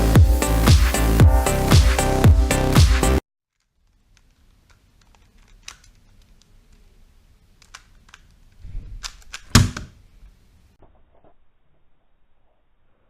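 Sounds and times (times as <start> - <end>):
puzzle cube layers clicking: 3.6 - 9.6.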